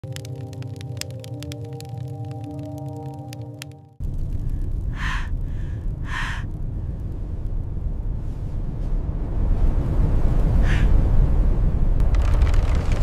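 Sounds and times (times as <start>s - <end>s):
strong blizzard wind: 4.0s - 13.0s.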